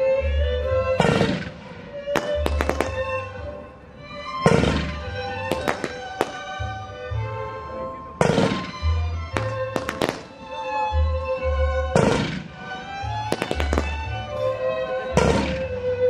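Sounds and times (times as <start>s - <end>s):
fireworks bangs and crackling: 1.0s - 3.2s, 4.4s - 6.7s, 8.2s - 10.6s, 11.9s - 14.3s, 15.2s - 15.9s.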